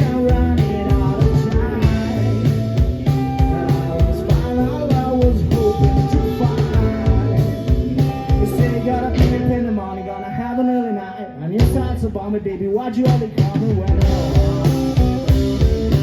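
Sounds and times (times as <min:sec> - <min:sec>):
drum beat: 0:00.0 - 0:09.6, 0:13.1 - 0:16.0
bass guitar: 0:00.0 - 0:16.0
electric guitar: 0:00.0 - 0:16.0.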